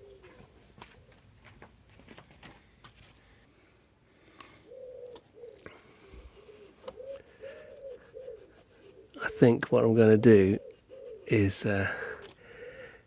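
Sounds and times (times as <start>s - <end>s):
ringing metallic clink: 4.4s - 4.7s
pigeon cooing: 4.5s - 13.0s.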